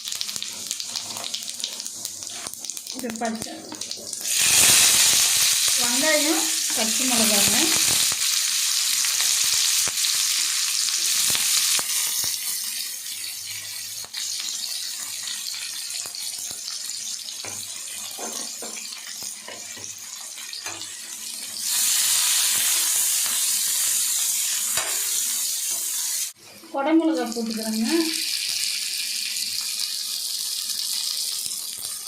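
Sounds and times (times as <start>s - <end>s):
onions sizzling in hot oil: 0.0s - 32.0s
spatula tapping and scraping pan: 24.7s - 25.1s.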